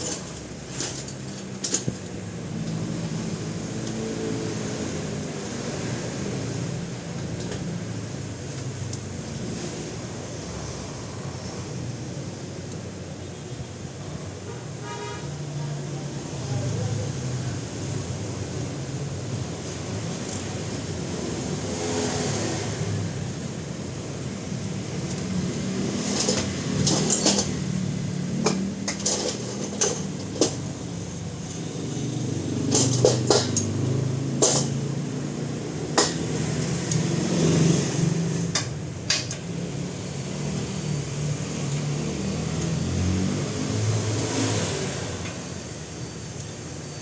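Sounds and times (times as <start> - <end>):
metal tools clinking on car parts: 0.0 - 2.8, 25.0 - 35.1, 35.9 - 37.0, 38.5 - 39.6.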